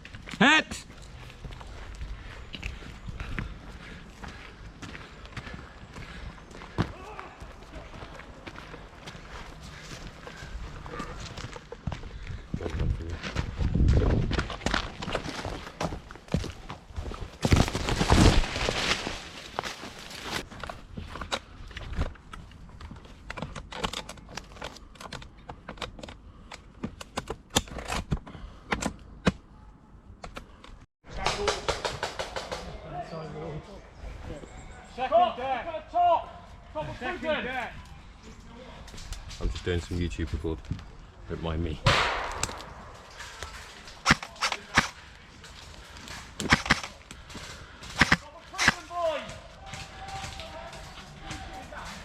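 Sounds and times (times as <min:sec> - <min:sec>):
airsoft guns firing: 0:31.2 - 0:32.7, 0:41.9 - 0:45.0, 0:46.4 - 0:47.0, 0:47.8 - 0:48.9
airsoft gun shots: 0:41.9 - 0:42.9.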